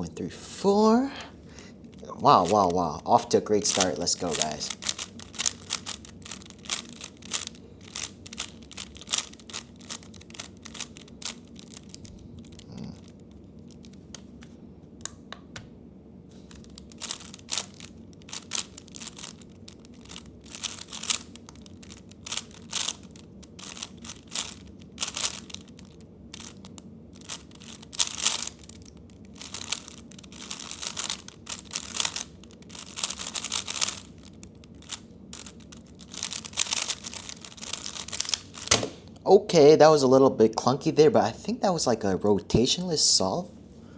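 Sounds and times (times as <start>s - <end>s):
puzzle cube clicking: 3.6s - 14.4s, 16.5s - 26.6s, 27.2s - 28.7s, 29.4s - 34.1s, 34.8s - 39.0s.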